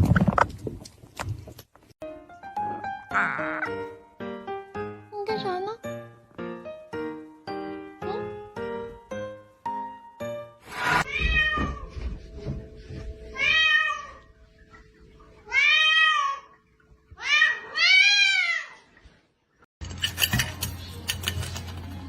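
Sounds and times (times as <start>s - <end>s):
cat meowing: 11.0s - 11.9s, 13.4s - 14.2s.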